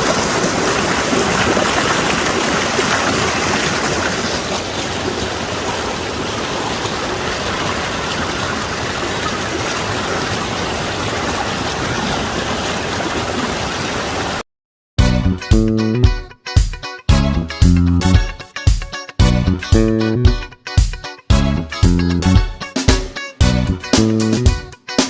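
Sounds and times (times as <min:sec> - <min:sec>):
stream flowing water: 0:00.0 - 0:14.4.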